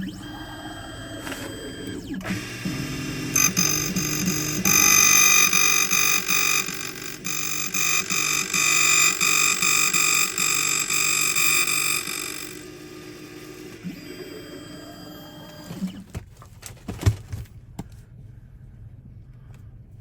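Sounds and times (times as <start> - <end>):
key-cutting machine whining: 0.0 - 16.0.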